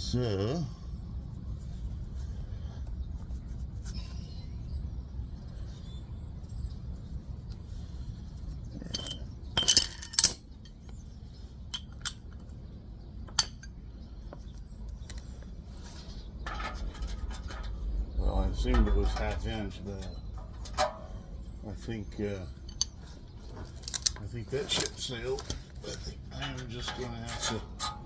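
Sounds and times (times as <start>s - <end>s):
steady low rumble: 0.0s - 28.0s
metal tools clinking: 8.7s - 10.9s, 11.7s - 12.5s, 13.3s - 13.8s, 16.4s - 17.9s, 22.5s - 28.0s.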